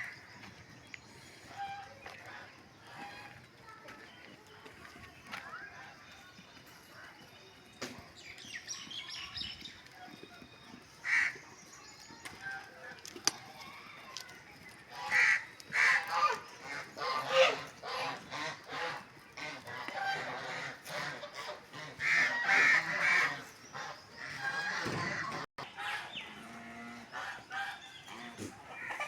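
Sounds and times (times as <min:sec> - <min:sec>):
geese honking: 0:14.9 - 0:29.0.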